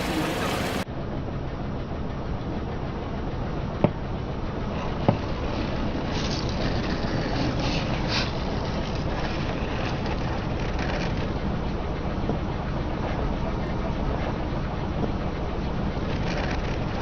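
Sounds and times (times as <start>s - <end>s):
car low rumble: 0.0s - 17.0s.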